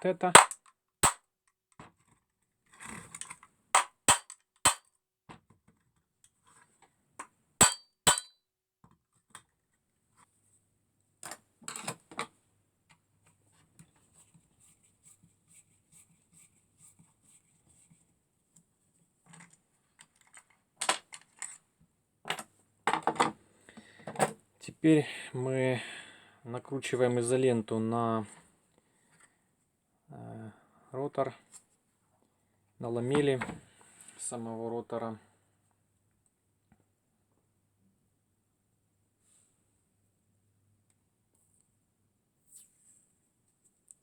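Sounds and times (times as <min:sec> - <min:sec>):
hand tools clicking and knocking: 0:00.3 - 0:01.2, 0:03.8 - 0:04.8, 0:07.6 - 0:08.3.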